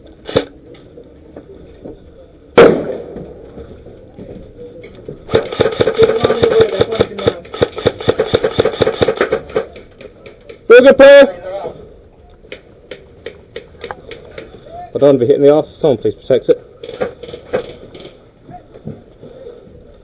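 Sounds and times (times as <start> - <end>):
airsoft rifle shots: 0.2 - 0.5, 2.6 - 3.2, 5.3 - 10.6.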